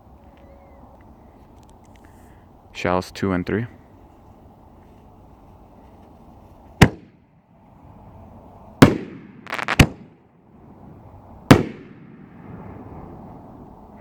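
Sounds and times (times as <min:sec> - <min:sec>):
firework booms: 0:06.8 - 0:07.1, 0:08.8 - 0:13.5
firework crackling: 0:08.8 - 0:10.2, 0:11.5 - 0:13.5.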